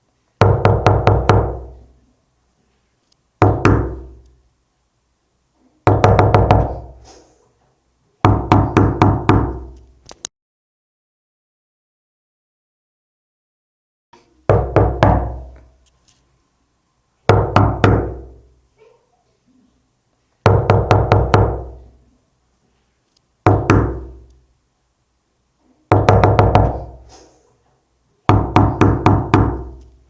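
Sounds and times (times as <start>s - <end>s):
knuckles knocking on door: 0.4s - 1.8s, 3.4s - 4.2s, 5.9s - 6.9s, 8.2s - 9.8s, 14.5s - 15.6s, 17.3s - 18.4s, 20.5s - 21.8s, 23.5s - 24.2s, 25.9s - 27.0s, 28.3s - 29.8s.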